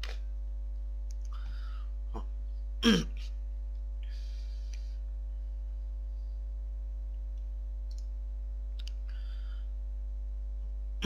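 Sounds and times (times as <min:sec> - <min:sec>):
electrical mains hum: 0:00.0 - 0:11.0
faint clicks: 0:01.0 - 0:01.5, 0:07.1 - 0:08.1, 0:08.7 - 0:09.2.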